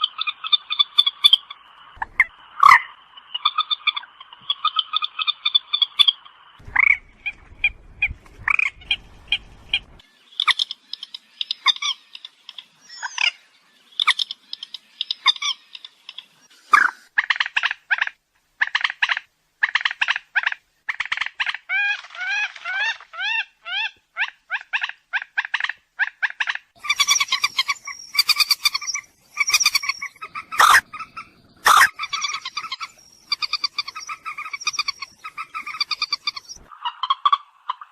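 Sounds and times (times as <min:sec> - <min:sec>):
moorhen croaking and clucking: 0:00.0 - 0:37.9
low rumble: 0:06.6 - 0:10.0.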